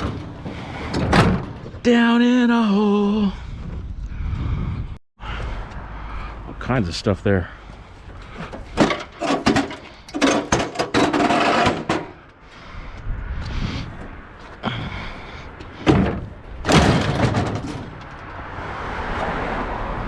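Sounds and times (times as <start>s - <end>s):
scraping: 8.0s - 12.6s
scrap knocking and rattling: 8.2s - 12.3s, 15.6s - 18.3s
heavy thuds: 15.6s - 18.2s.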